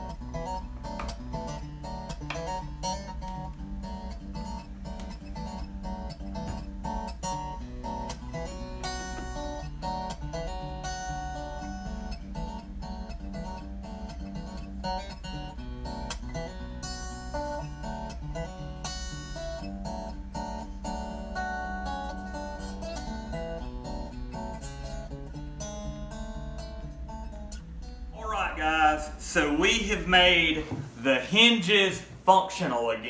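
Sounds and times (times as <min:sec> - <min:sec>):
plucked acoustic guitar music: 0:00.0 - 0:27.5.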